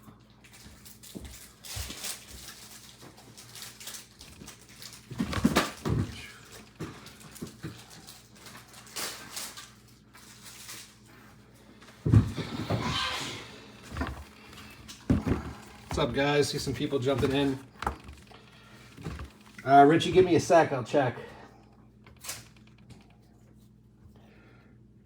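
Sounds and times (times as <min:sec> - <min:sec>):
handling rustles: 0:11.8 - 0:20.8.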